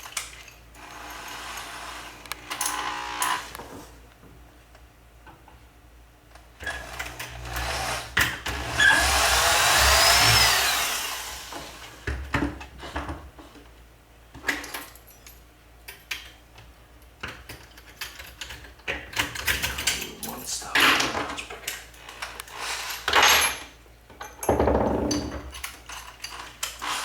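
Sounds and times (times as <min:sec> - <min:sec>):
power drill boring plastic: 0:06.7 - 0:11.9, 0:26.7 - 0:27.0.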